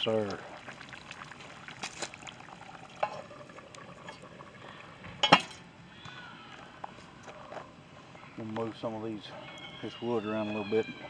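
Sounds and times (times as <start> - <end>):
stew bubbling and sizzling: 0.0 - 6.0
metal clatter: 5.2 - 5.6.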